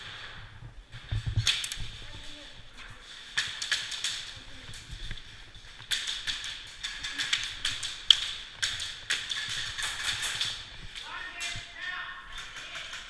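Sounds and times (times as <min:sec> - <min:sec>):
sharp clicks and knocks: 0:03.4 - 0:13.0.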